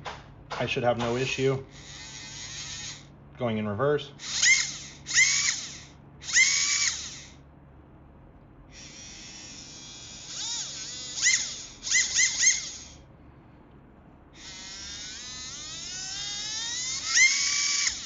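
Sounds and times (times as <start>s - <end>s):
electric motor high whine: 1.3s - 3.1s, 4.2s - 7.4s, 8.7s - 13.0s, 14.3s - 18.0s.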